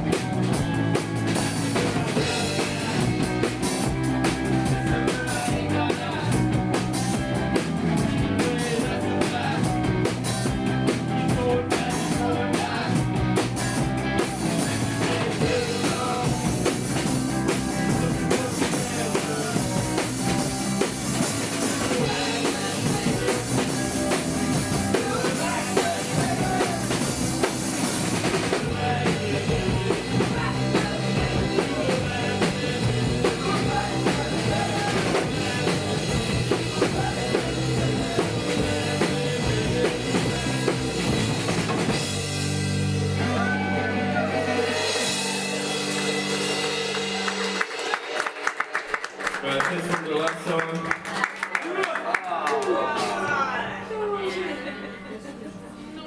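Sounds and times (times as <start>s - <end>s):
electric guitar: 0.0s - 48.5s
drum kit: 0.0s - 49.3s
person singing: 4.6s - 6.6s, 11.2s - 13.1s, 15.2s - 20.4s, 21.6s - 27.2s, 28.5s - 40.8s.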